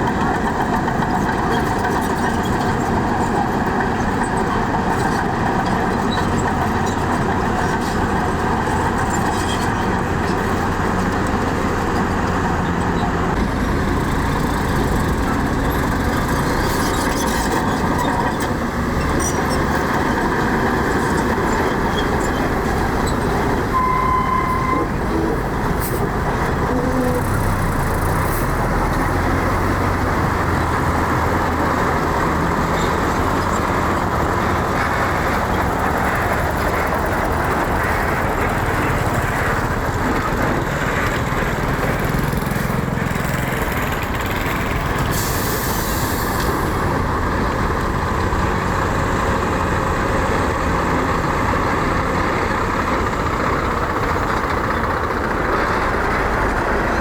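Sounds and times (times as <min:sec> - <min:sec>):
construction machinery diesel engines: 0:00.0 - 0:57.0
short beep: 0:23.7 - 0:24.9.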